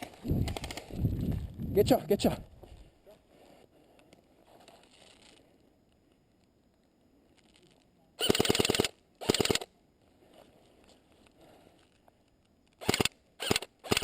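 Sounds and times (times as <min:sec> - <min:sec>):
airsoft gun firing bursts: 0:08.2 - 0:09.7, 0:12.8 - 0:14.0.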